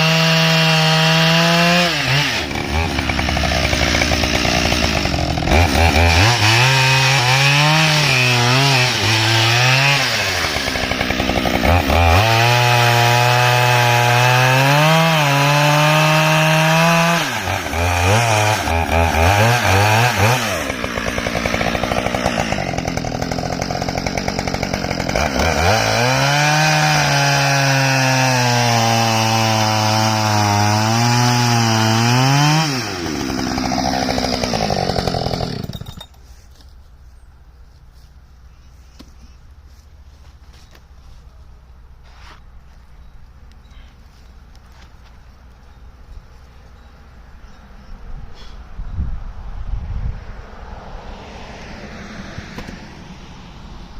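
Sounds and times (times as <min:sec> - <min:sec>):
chainsaw cutting wood: 0:00.0 - 0:36.8, 0:51.2 - 0:53.2.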